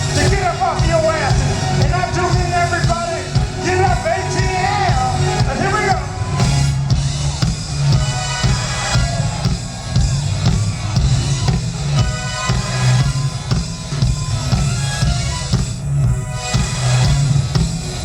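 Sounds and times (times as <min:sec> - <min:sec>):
drum kit groove: 0:00.0 - 0:18.0
funk band playing: 0:00.0 - 0:18.0
heavy bass line: 0:00.0 - 0:18.0.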